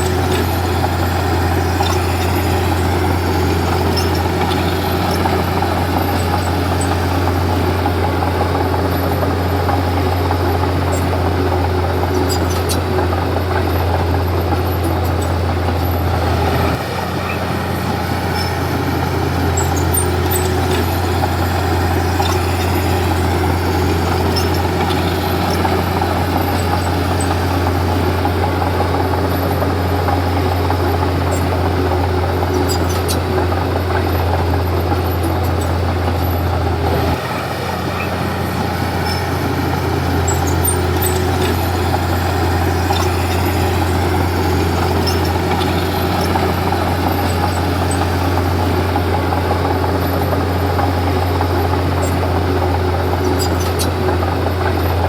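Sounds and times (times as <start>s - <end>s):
bulldozer diesel engine droning: 0.0s - 55.0s.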